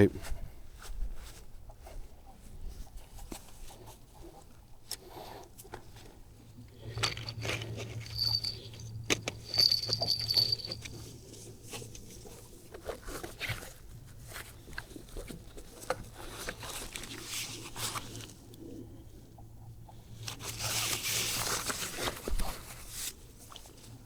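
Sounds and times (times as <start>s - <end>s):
fishing gear rummaged by hand: 6.7s - 13.7s
steady low hum: 7.2s - 11.2s.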